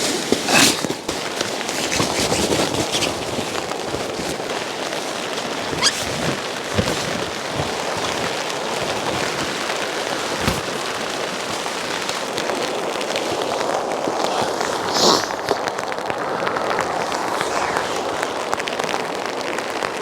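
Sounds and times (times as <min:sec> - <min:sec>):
rain on a tarp: 0:00.0 - 0:20.0.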